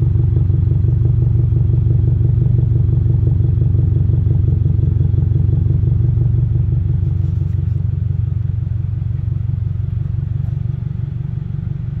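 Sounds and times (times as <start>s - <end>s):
car engine idling: 0.0s - 12.0s.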